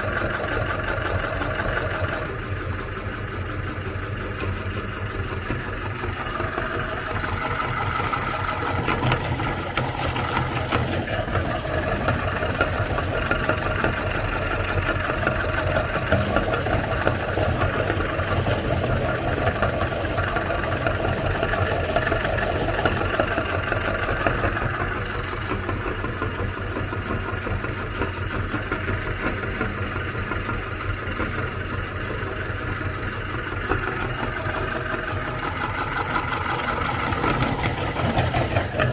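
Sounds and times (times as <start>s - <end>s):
electric meat grinder humming: 5.3s - 27.7s, 33.6s - 38.9s.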